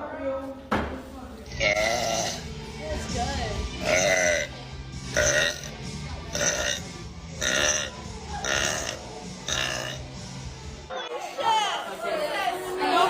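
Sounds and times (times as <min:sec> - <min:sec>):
quiet background music: 0:00.0 - 0:13.0
woman burping: 0:01.5 - 0:02.4, 0:03.8 - 0:04.5, 0:05.1 - 0:05.7, 0:06.3 - 0:06.8, 0:07.4 - 0:10.0.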